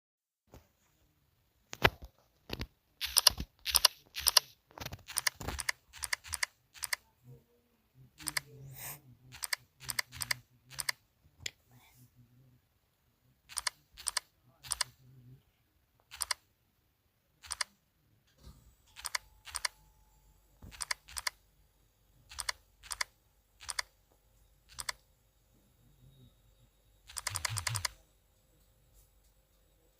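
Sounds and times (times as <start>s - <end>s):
mechanical keyboard typing: 3.0s - 7.0s, 16.1s - 16.4s, 19.0s - 19.7s, 20.7s - 21.4s, 22.3s - 23.9s, 24.7s - 25.0s, 27.1s - 28.0s.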